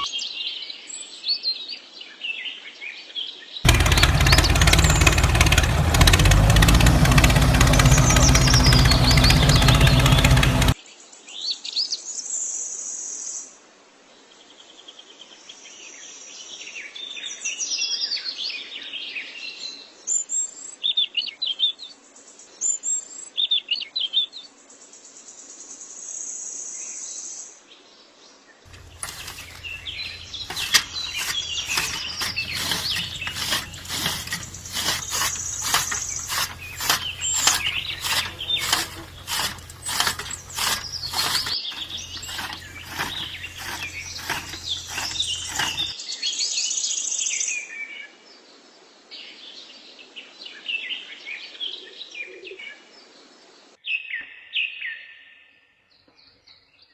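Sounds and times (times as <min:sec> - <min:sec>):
birds chirping: 0:03.7 - 0:10.8, 0:28.7 - 0:45.9
rapid mechanical clicking: 0:03.7 - 0:10.8, 0:28.7 - 0:45.9.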